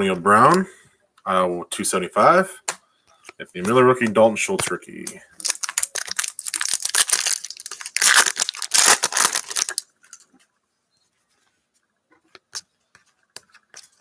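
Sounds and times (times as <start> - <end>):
foil wrapper tearing and crinkling: 5.4 - 9.9.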